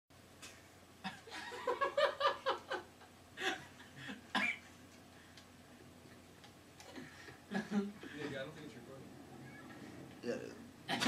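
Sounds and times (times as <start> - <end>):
person laughing: 6.8 - 8.2.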